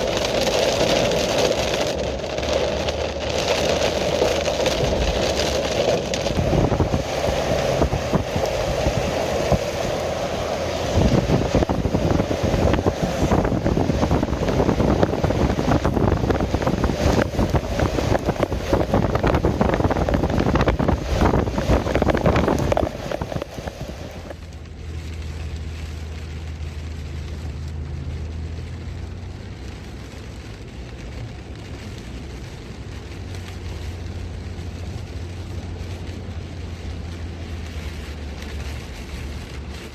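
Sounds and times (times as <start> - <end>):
rushing water: 0.0 - 29.7
heavy rain: 0.0 - 39.9
low vehicle rumble: 0.0 - 39.9.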